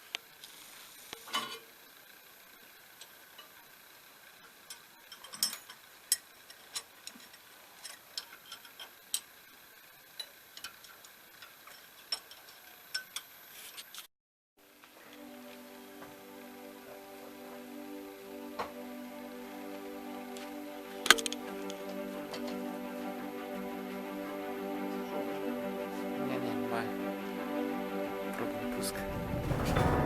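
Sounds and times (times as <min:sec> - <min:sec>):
background music: 0:14.6 - 0:30.0.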